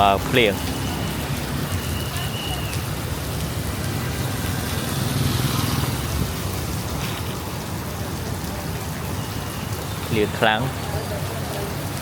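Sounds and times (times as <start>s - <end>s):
heavy rain falling: 0.0s - 12.0s
vehicle passing: 3.2s - 7.2s.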